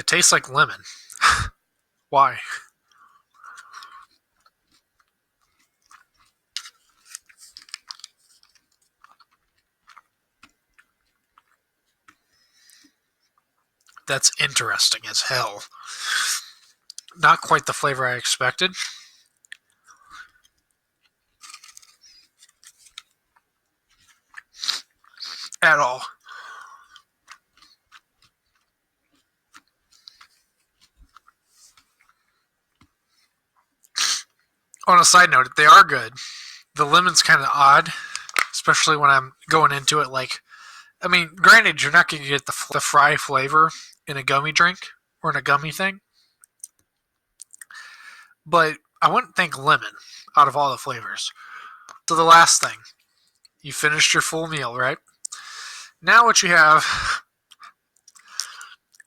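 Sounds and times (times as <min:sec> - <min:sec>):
person chewing gummy candy: 0:02.7 - 0:14.4, 0:15.7 - 0:17.4, 0:18.8 - 0:34.8, 0:37.8 - 0:38.6, 0:46.4 - 0:49.0, 0:57.4 - 0:59.0.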